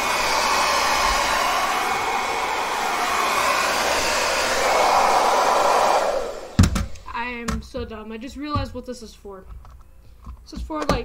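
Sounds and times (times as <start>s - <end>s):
hair dryer blowing: 0.0s - 7.1s.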